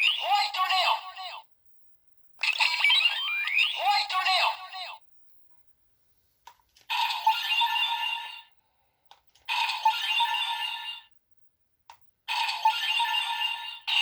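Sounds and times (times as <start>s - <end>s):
toy electronic music and effects: 0.0s - 0.6s, 2.4s - 4.6s.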